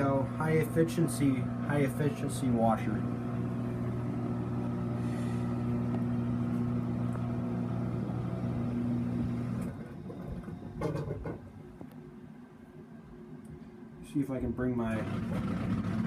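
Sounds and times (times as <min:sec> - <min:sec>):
washer drain pump humming: 0:00.0 - 0:11.5, 0:14.9 - 0:16.0.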